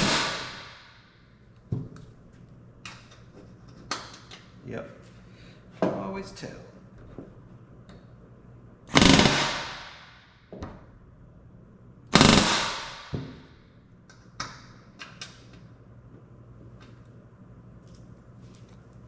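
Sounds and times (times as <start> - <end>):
pneumatic rivet gun bursts: 0.0 - 0.8, 8.9 - 10.1, 12.1 - 13.1.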